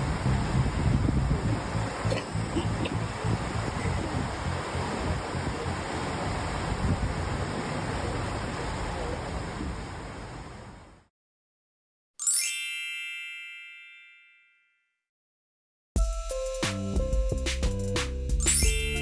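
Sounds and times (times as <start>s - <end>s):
rushing wind and sea: 0.0s - 11.1s
bright bell ding: 12.2s - 14.7s, 18.4s - 19.0s.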